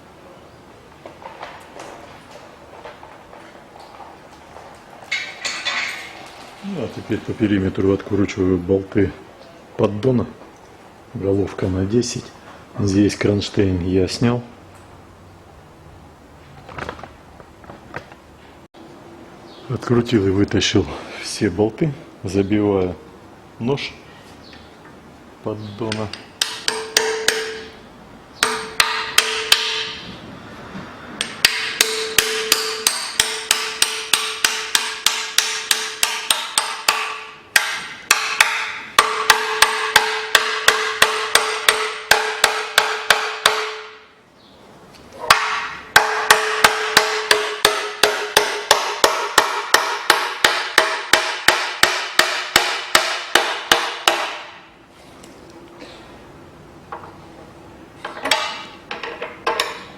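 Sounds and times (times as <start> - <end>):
hammer blows on metal: 31.2 - 44.1.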